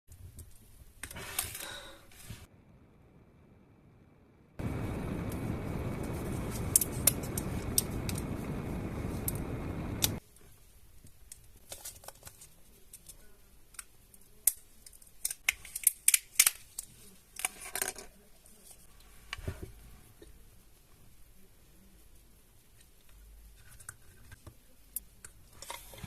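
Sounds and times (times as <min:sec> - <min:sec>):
steady rushing noise: 0:04.6 - 0:10.2.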